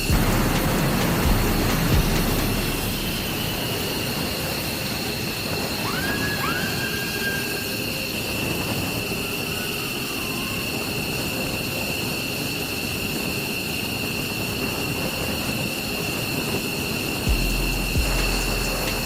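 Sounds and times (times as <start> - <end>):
low rumble: 0.0 - 4.8, 17.3 - 19.0
jet engine whine: 0.0 - 19.0.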